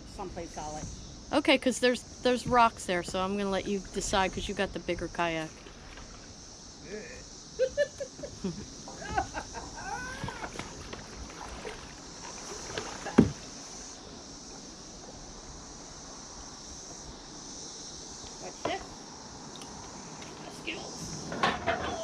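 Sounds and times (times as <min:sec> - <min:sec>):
insects buzzing: 0:00.0 - 0:22.0
water lapping against hull: 0:05.3 - 0:06.4, 0:08.9 - 0:14.6
kayak paddle knocks: 0:10.2 - 0:11.9, 0:12.6 - 0:13.5.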